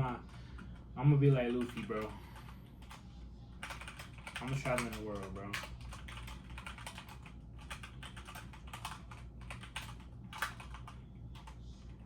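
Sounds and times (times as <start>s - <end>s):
low steady hum: 0.0s - 12.0s
keyboard typing clicks: 3.6s - 11.6s.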